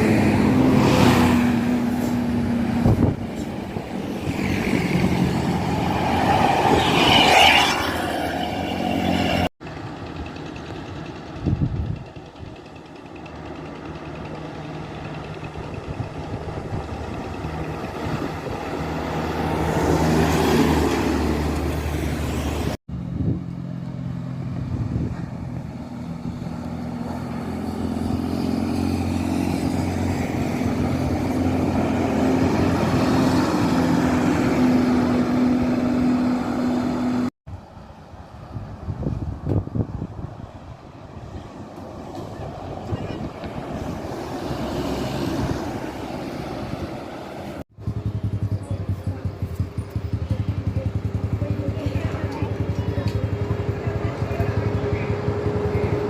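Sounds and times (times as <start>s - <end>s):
engine humming: 0.0s - 56.0s
heavy vehicles passing: 0.0s - 56.0s.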